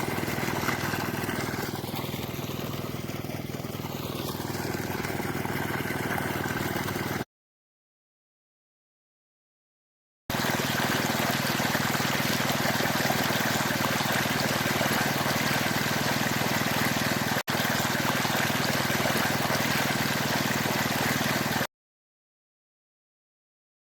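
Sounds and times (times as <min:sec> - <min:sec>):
machine engine humming: 0:00.0 - 0:07.2.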